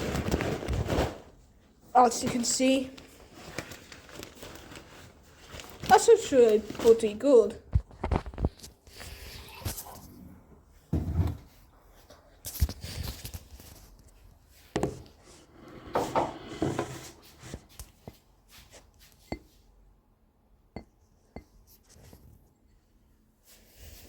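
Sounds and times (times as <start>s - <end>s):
rustling and handling: 0.0s - 10.1s, 11.4s - 15.5s, 21.2s - 24.0s.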